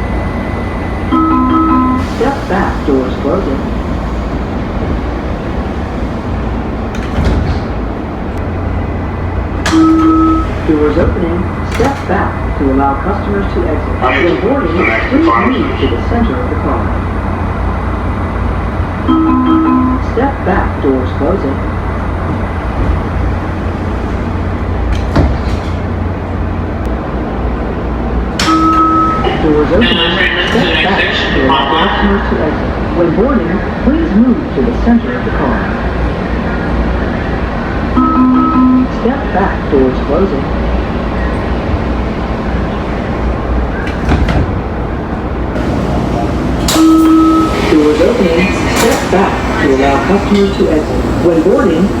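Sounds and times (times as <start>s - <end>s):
train sliding doors closing: 0.2s - 52.0s
doors sliding shut with knocks: 6.9s - 7.9s, 11.0s - 12.3s, 24.8s - 26.0s, 43.8s - 44.6s, 45.6s - 52.0s.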